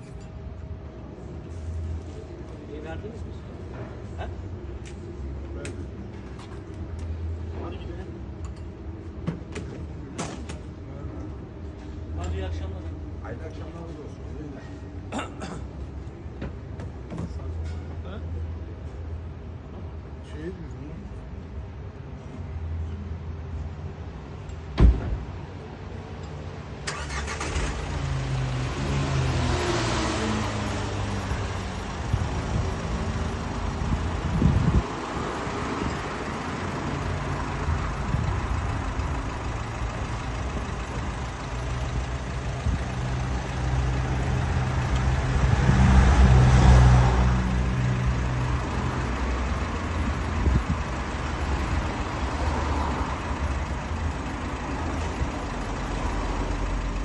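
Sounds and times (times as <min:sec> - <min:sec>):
car engine driving off: 0:26.8 - 0:34.8.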